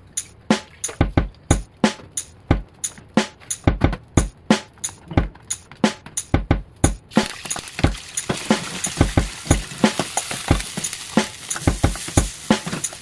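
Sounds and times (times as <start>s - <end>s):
hot oil sizzling: 7.1s - 13.0s
metal utensil knocking on pan: 7.8s - 13.0s.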